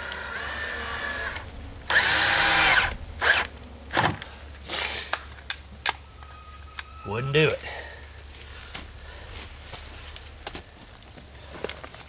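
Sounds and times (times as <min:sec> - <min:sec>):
drill clicks: 0:00.0 - 0:03.5
power drill driving screws: 0:00.0 - 0:03.5.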